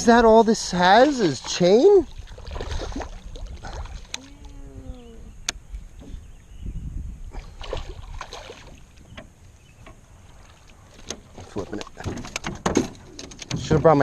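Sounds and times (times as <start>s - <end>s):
person humming: 4.2s - 5.4s
rumbling handling noise in boat: 8.0s - 14.0s.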